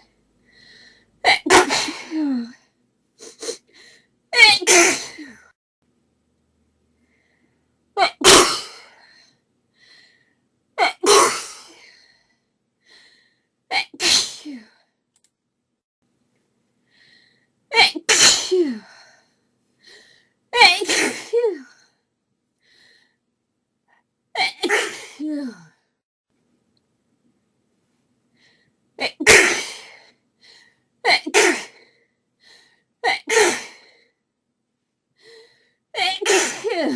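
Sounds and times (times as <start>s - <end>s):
woman sneezing: 4.4s - 5.4s, 36.0s - 36.9s.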